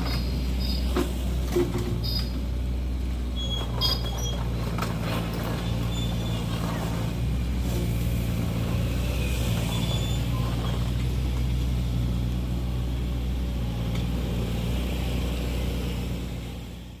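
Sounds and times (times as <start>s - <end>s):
faint high squeaks: 0.0s - 2.4s, 3.4s - 7.1s, 9.6s - 11.0s
excavator diesel engine running: 0.0s - 17.0s.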